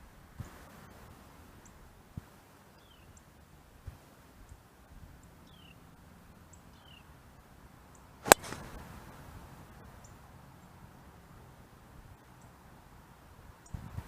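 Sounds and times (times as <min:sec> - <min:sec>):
faint bird chirps: 0:02.7 - 0:03.3, 0:05.2 - 0:05.8, 0:06.5 - 0:07.1
golf club striking ball: 0:08.2 - 0:08.8.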